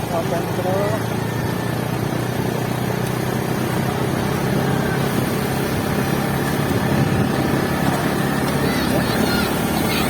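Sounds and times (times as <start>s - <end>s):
vehicle engine running: 0.0s - 10.0s.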